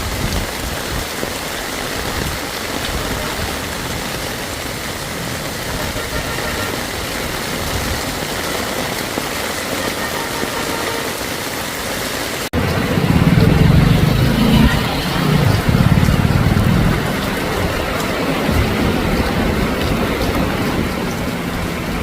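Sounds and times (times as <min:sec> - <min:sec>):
heavy rain hissing: 0:00.0 - 0:22.0
road noise: 0:00.0 - 0:22.0
vehicle engines rumbling: 0:02.4 - 0:22.0.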